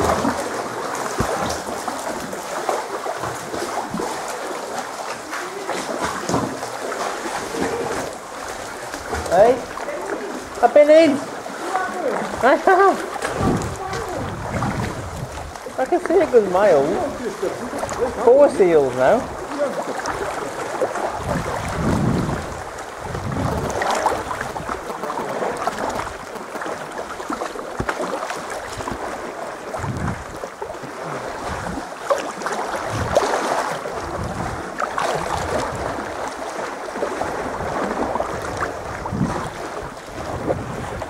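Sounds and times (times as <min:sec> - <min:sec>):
sea water sloshing around kayak: 0:00.0 - 0:41.0
wind buffeting microphone: 0:11.8 - 0:24.8, 0:29.7 - 0:30.4, 0:32.8 - 0:36.2, 0:37.2 - 0:41.0.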